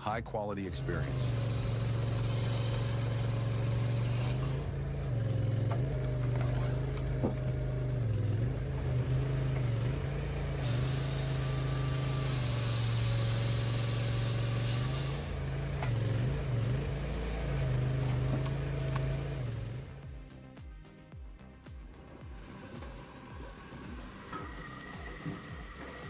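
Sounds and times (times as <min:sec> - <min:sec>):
loader engine running: 0:00.0 - 0:20.5, 0:21.4 - 0:26.0.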